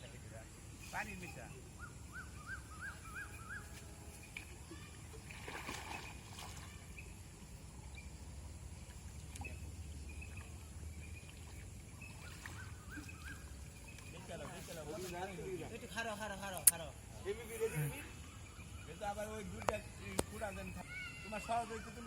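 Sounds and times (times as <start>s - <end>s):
bird chirps: 1.3s - 4.4s, 9.4s - 14.3s
water sloshing and splashing: 3.6s - 7.6s, 8.6s - 15.6s.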